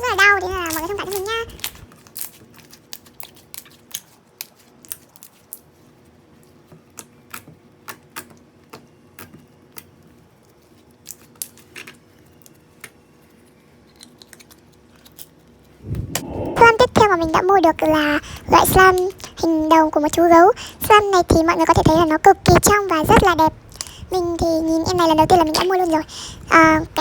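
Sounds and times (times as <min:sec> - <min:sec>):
faint steady hum: 0:15.7 - 0:27.0
air bubbles popping: 0:15.8 - 0:17.4.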